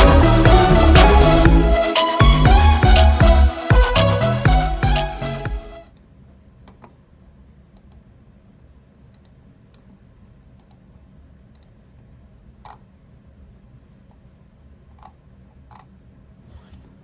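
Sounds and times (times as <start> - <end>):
low hum: 0.0 - 5.8.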